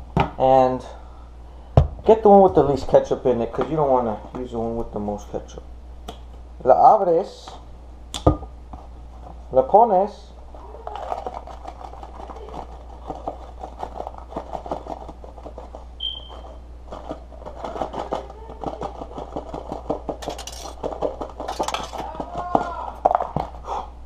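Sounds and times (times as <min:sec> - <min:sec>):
rustling: 0:10.5 - 0:23.6
short squeaks: 0:16.0 - 0:16.6.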